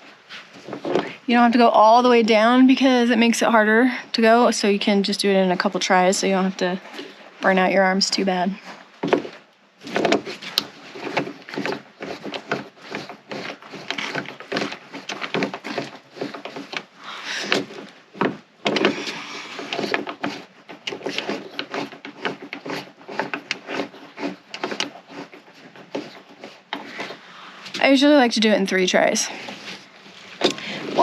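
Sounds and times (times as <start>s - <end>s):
rivet tool clicking and creaking: 9.9s - 27.2s.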